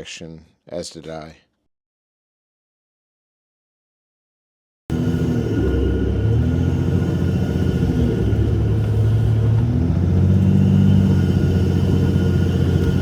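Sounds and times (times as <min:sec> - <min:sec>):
diesel engine rumbling: 0:04.9 - 0:13.0.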